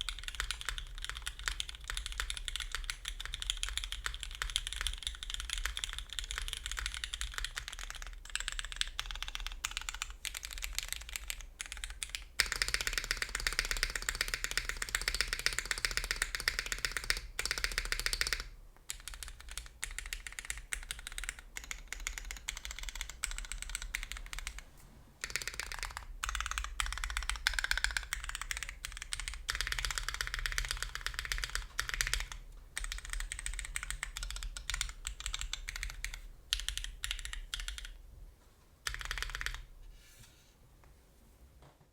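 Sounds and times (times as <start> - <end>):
mechanical keyboard typing: 0.0 - 24.6, 25.2 - 38.0, 38.8 - 39.7.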